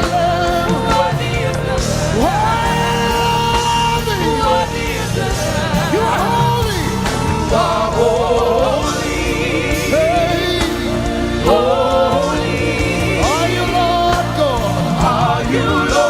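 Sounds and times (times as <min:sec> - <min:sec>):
band with keys and drums: 0:00.0 - 0:16.0
choir singing gospel music: 0:00.0 - 0:16.0.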